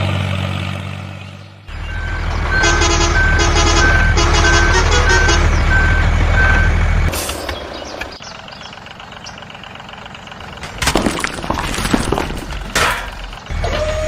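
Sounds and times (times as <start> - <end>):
truck engine running: 0.0 - 14.0
reversing alarm beeping: 1.7 - 6.9.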